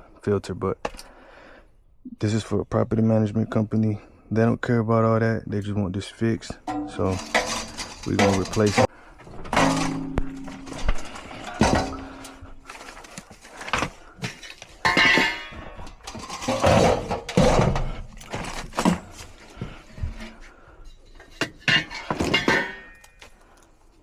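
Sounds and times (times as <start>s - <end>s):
metal clanking and knocking: 6.6s - 13.0s, 13.6s - 20.4s, 21.2s - 23.2s
metal scraping and ringing: 6.7s - 8.9s.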